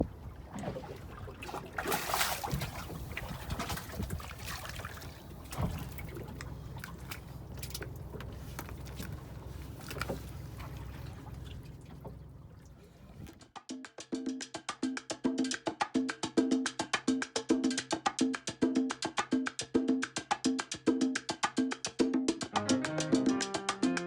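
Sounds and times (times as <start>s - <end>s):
low rumble: 0.0s - 13.4s
water sloshing around a boat: 0.0s - 13.4s.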